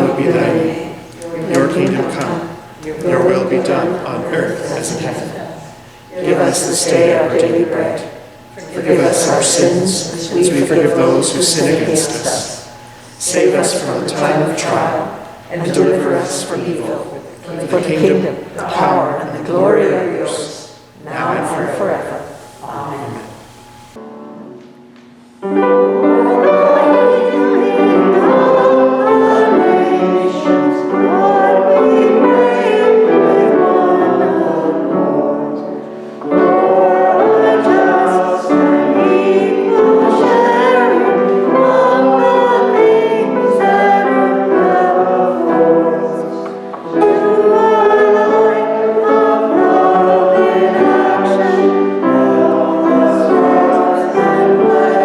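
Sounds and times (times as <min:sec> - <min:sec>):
choir singing a hymn: 0:00.0 - 0:24.6, 0:25.4 - 0:55.0
singers breathing: 0:05.6 - 0:06.2, 0:12.7 - 0:13.2.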